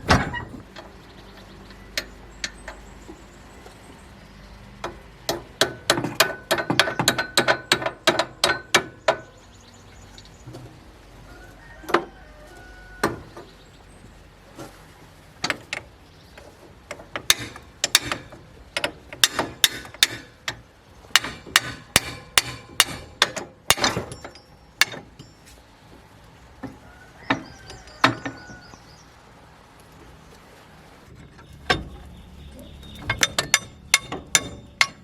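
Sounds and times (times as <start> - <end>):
metal tools clanking on metal: 5.6 - 9.3, 16.9 - 25.6, 27.3 - 28.7, 31.2 - 35.0.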